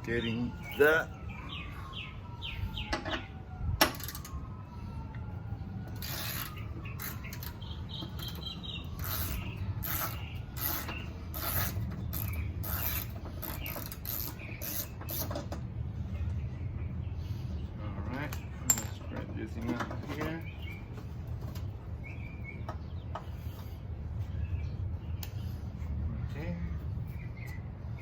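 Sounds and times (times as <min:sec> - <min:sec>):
distant siren wailing: 0:00.0 - 0:16.8
hand ratchet clicking: 0:06.0 - 0:07.6, 0:09.0 - 0:15.4.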